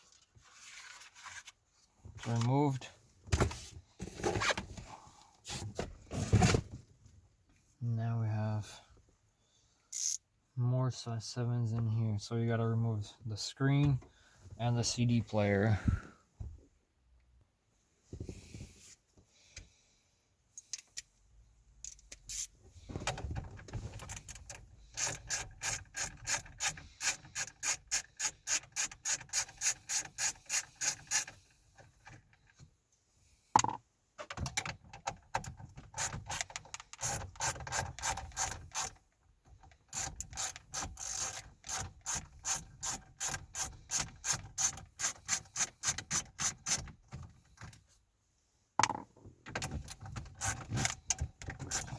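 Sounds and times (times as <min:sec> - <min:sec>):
hand ratchet clicking: 0:10.0 - 0:10.2, 0:24.1 - 0:31.4, 0:35.9 - 0:39.0, 0:39.9 - 0:46.8, 0:49.9 - 0:51.9.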